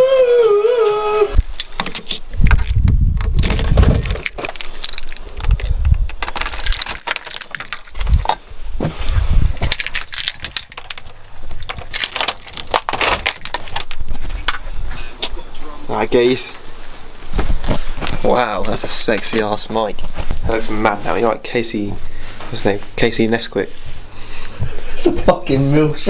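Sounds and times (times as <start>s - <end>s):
dull low thumps: 2.3s - 4.1s.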